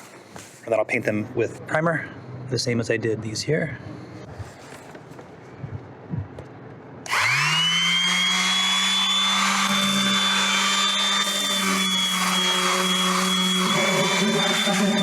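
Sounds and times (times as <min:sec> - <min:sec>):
power sander whining: 0:07.1 - 0:15.0.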